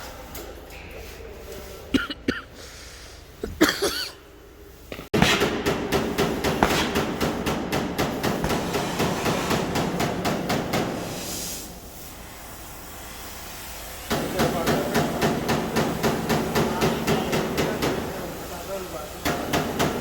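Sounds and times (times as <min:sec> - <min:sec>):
rapid hammering: 0:05.1 - 0:11.0, 0:14.1 - 0:18.1, 0:19.2 - 0:20.0.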